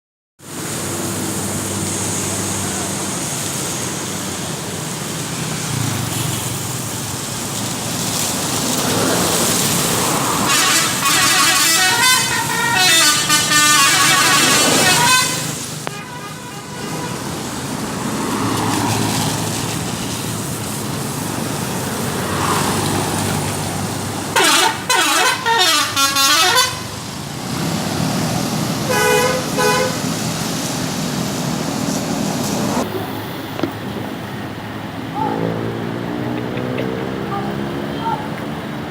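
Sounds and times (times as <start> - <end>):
warbling multi-tone bus horn: 10.4 - 17.3, 24.3 - 27.1, 28.9 - 30.1
short horn toots: 10.5 - 17.2, 24.4 - 26.8
sweeping siren-like horn: 10.5 - 17.2.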